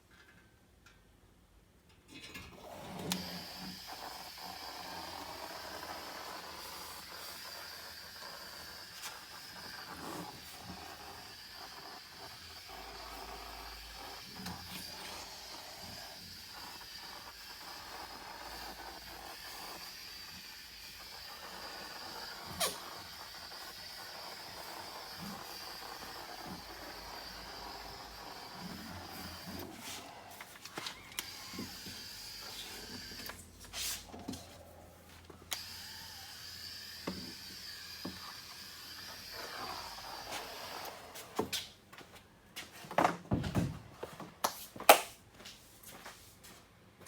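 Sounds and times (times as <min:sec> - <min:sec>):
compressed air hissing: 0:03.2 - 0:34.1.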